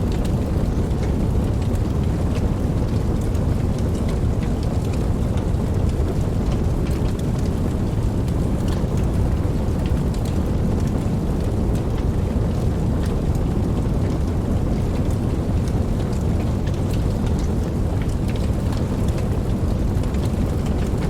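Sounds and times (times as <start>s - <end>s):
raindrops ticking: 0.0s - 21.0s
steady rain hiss: 0.0s - 21.0s.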